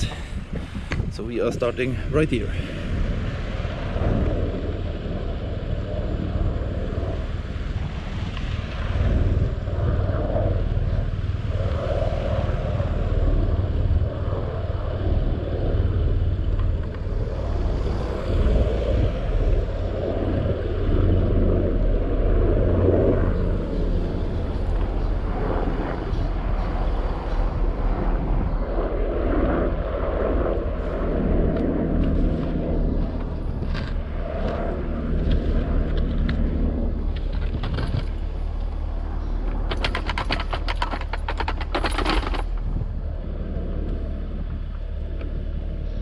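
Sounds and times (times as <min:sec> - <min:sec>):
excavator engine running: 0:31.5 - 0:46.0.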